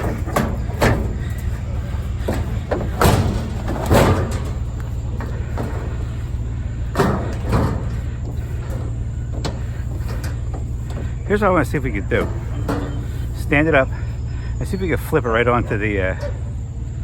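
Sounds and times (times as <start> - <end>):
metal file cabinet banging: 0.0 - 17.0
steady low hum: 0.0 - 17.0.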